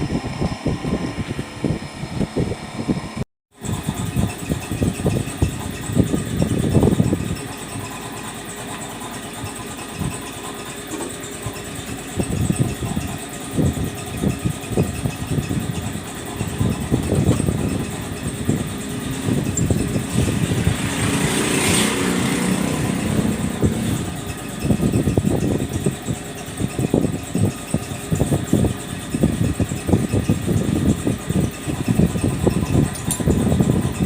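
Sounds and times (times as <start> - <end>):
lathe cutting metal with chatter: 3.6 - 34.0.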